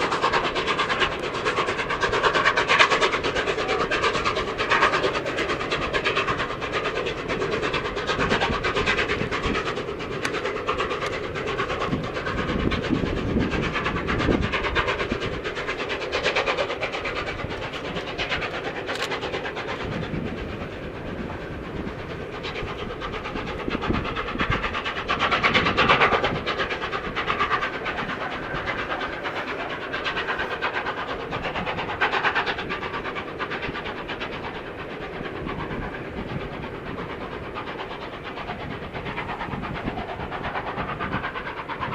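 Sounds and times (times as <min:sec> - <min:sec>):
train rolling on rails: 0:00.0 - 0:41.9.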